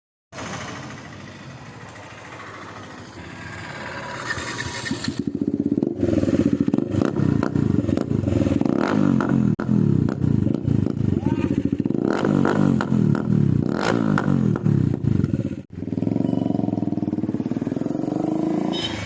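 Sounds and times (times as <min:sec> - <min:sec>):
motorcycle engine revving past: 0:00.4 - 0:19.0.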